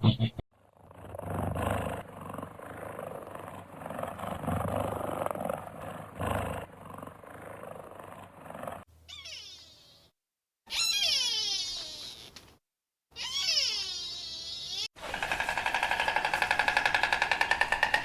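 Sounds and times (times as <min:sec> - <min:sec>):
animal growling: 0:00.6 - 0:08.9.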